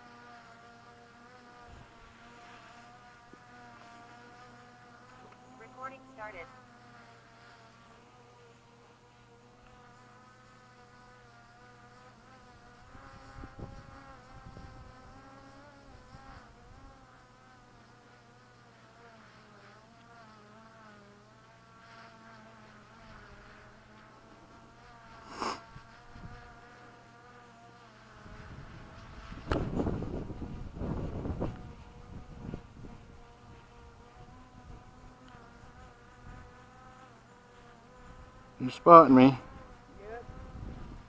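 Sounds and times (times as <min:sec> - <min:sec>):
wind rumble on microphone: 0:01.6 - 0:02.1, 0:13.0 - 0:15.2, 0:25.7 - 0:26.5, 0:28.2 - 0:35.0, 0:39.9 - 0:41.0.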